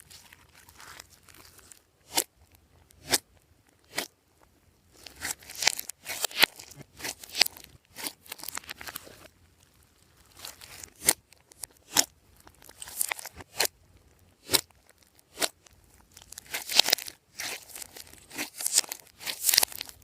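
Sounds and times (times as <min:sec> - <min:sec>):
slime crackling and squishing: 0:00.0 - 0:20.0.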